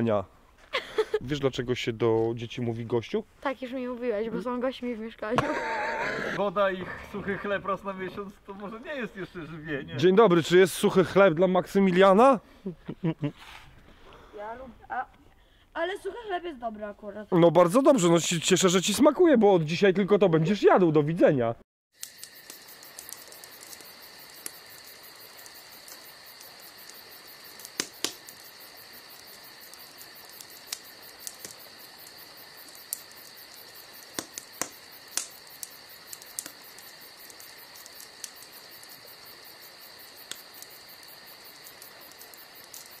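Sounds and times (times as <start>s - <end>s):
insect chirring: 21.9s - 43.0s.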